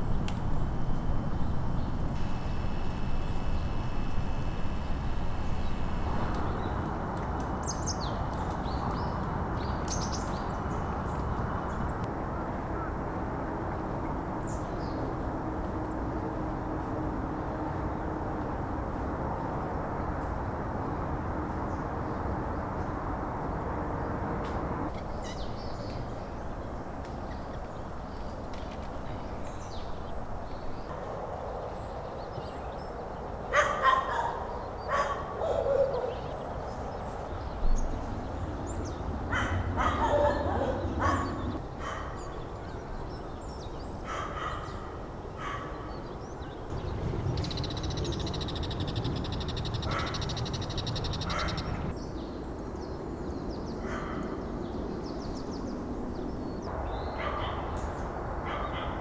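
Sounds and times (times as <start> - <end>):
harsh bird calls: 0.0 - 7.0, 46.7 - 52.0
steady low background: 0.0 - 7.7.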